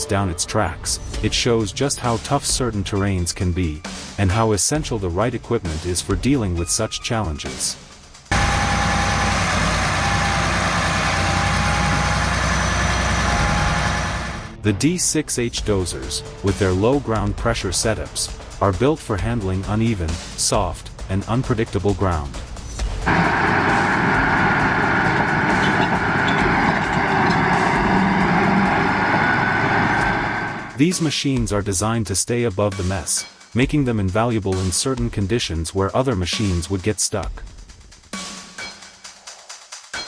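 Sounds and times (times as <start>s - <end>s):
heavy diesel engine running: 8.3s - 14.6s, 23.0s - 30.8s
thin steady whine: 23.1s - 30.8s.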